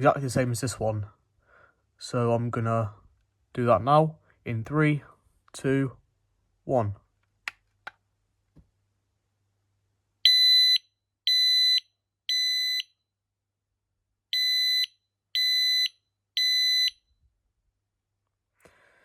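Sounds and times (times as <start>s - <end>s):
smoke alarm beeps: 10.2s - 13.0s, 14.3s - 17.1s.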